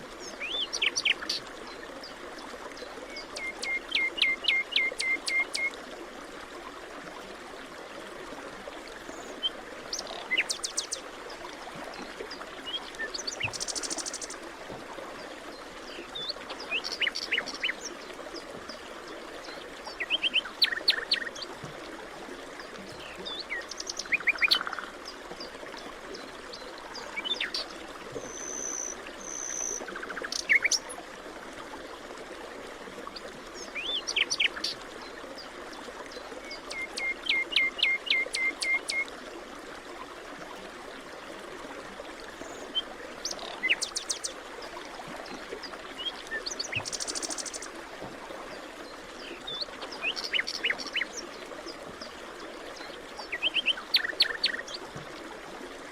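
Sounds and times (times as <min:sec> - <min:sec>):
songbirds chirping and trilling: 0:49.1 - 0:51.8, 0:53.2 - 0:54.8.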